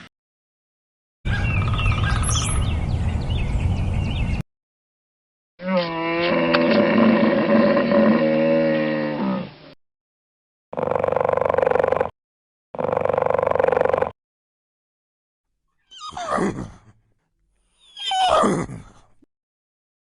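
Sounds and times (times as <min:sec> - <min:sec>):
cow mooing: 0:05.6 - 0:09.5.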